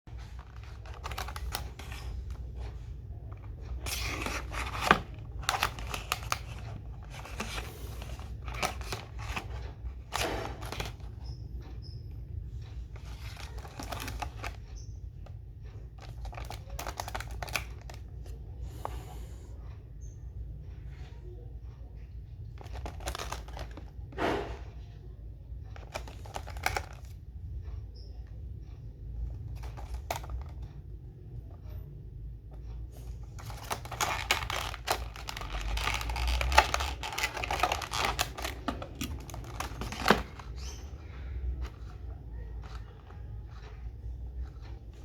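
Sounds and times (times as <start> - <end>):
packaging rustling and tearing: 0.2 - 11.2, 13.0 - 14.7, 16.0 - 18.2, 22.6 - 23.9, 25.8 - 27.1, 29.5 - 30.6, 33.0 - 45.0
packaging clicks and taps: 0.2 - 11.4, 12.8 - 19.0, 22.4 - 24.0, 25.7 - 27.4, 29.1 - 31.5, 32.4 - 45.0.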